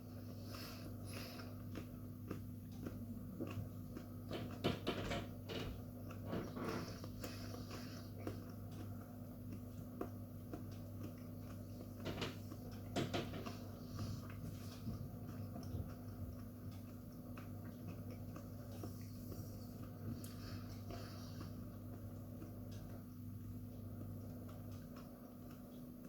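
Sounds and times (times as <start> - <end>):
steady low hum: 0.0 - 26.0
wet mouth chewing clicks: 0.1 - 4.6, 5.8 - 26.0.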